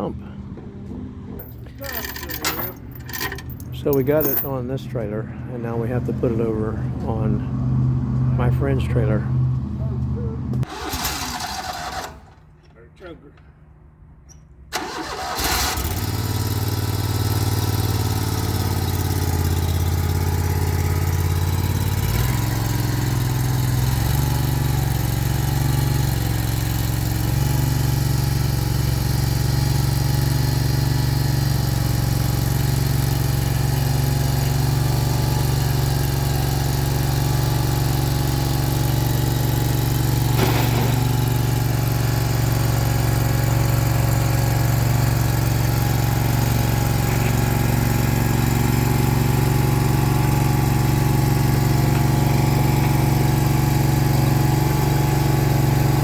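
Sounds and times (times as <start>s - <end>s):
small gasoline engine running: 10.6s - 12.4s, 14.8s - 56.0s.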